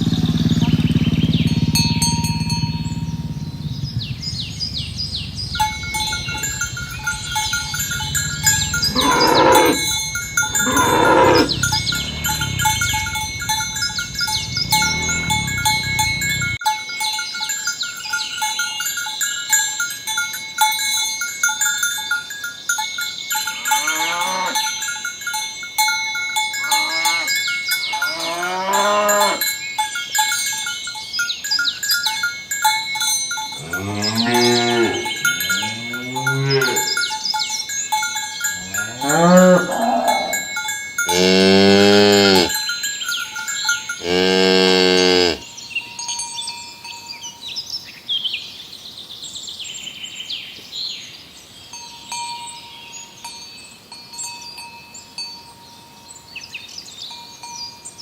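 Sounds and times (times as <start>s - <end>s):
cows mooing: 0.0s - 16.6s, 23.5s - 24.6s, 26.6s - 27.4s, 28.0s - 29.5s, 33.5s - 37.1s, 38.4s - 42.6s, 44.0s - 45.5s
thin steady ringing tone: 0.0s - 48.0s, 51.7s - 58.0s.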